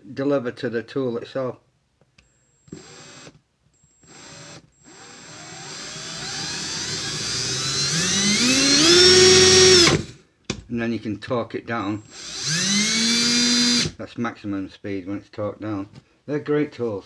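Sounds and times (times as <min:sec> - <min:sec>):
cordless drill motor whining: 0:02.2 - 0:10.2, 0:12.0 - 0:14.0.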